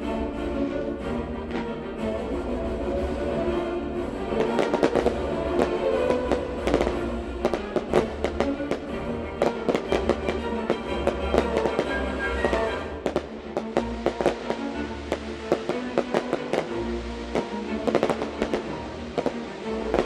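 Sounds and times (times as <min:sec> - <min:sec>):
orchestral music: 0:00.0 - 0:20.0
fireworks bangs and crackling: 0:04.3 - 0:20.0.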